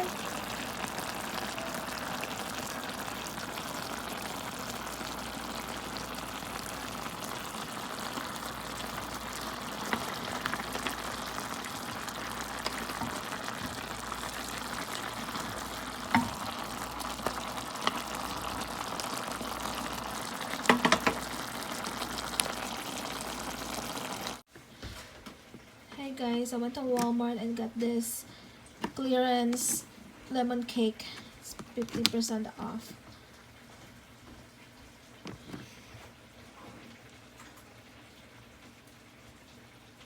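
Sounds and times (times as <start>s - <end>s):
food sizzling in a pan: 0.0s - 24.5s.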